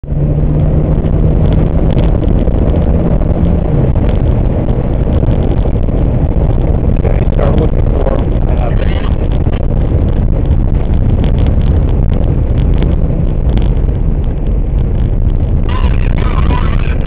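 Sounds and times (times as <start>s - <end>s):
car engine and road noise rumble: 0.0s - 17.0s
steady hum: 15.1s - 17.0s.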